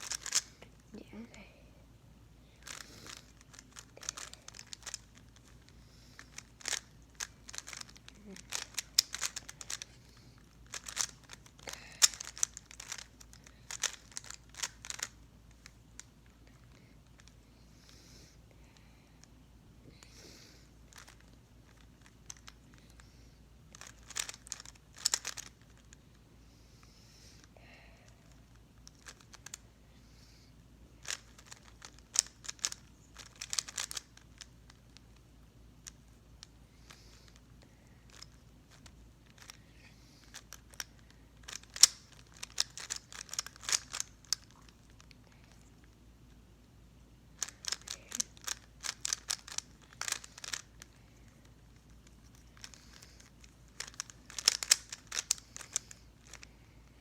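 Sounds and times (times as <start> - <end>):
puzzle cube plastic clicks: 0.0 - 0.8, 2.6 - 17.4, 20.9 - 23.1, 23.7 - 26.0, 28.2 - 29.6, 31.0 - 35.2, 35.8 - 46.0, 47.4 - 56.8.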